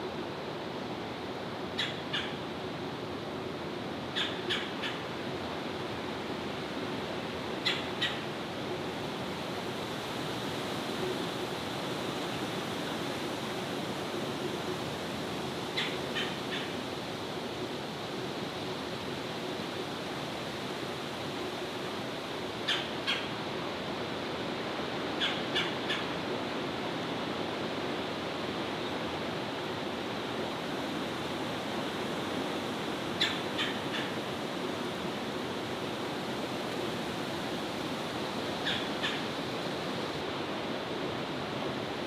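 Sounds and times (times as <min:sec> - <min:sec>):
birds giving sharp calls: 0:38.6 - 0:39.2.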